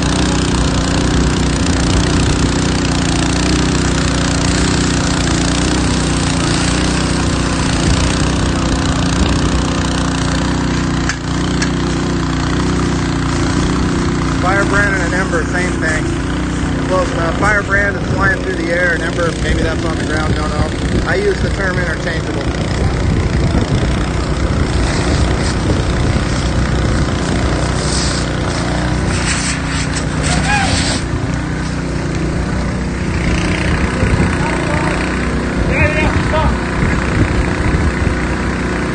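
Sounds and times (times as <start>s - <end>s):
water spray hissing: 0.0s - 17.4s, 24.1s - 35.6s
engine running: 0.0s - 38.9s
wind: 0.0s - 38.9s.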